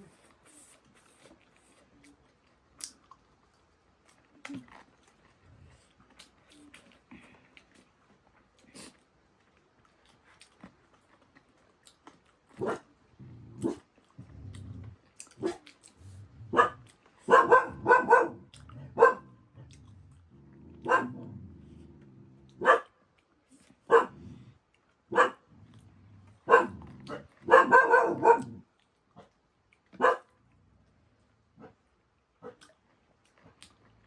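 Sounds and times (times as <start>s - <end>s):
dog barking: 12.6s - 12.8s, 16.5s - 19.3s, 20.8s - 21.3s, 22.6s - 22.9s, 23.9s - 24.2s, 25.1s - 25.4s, 26.5s - 28.6s, 30.0s - 30.3s
dog growling low: 12.6s - 16.9s, 17.8s - 22.7s, 23.9s - 24.6s, 25.5s - 28.7s.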